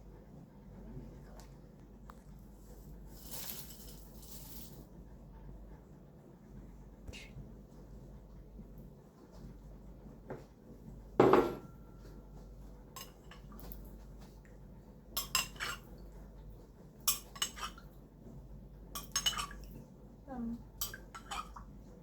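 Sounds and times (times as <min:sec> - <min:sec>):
utensils clinking against dishes: 0:03.2 - 0:04.8, 0:13.0 - 0:13.5, 0:15.2 - 0:15.9, 0:17.1 - 0:17.8, 0:19.0 - 0:19.7, 0:20.8 - 0:21.6
dull knock: 0:11.2 - 0:11.6.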